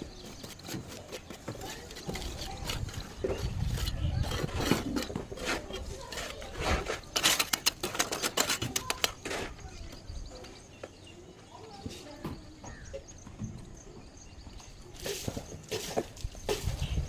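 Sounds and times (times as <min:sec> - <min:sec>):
hard objects clinking and scraping: 0:00.0 - 0:09.8, 0:15.0 - 0:17.0.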